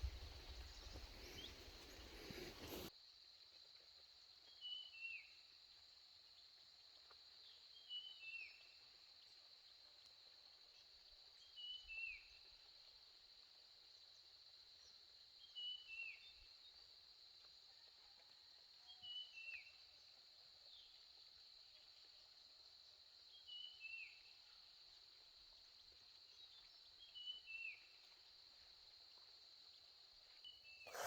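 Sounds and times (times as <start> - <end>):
bird calling: 0.0 - 2.9.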